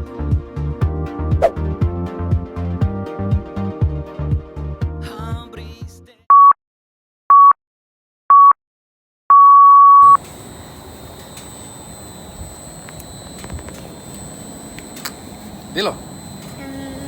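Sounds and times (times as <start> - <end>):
faint high whine: 10.0 - 17.0
steady background noise: 10.0 - 17.0.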